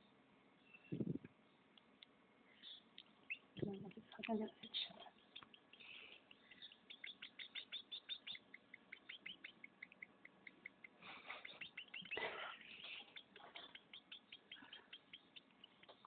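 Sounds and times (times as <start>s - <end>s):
baby birds begging chirps: 2.5s - 16.0s
harsh bird calls: 4.7s - 16.0s.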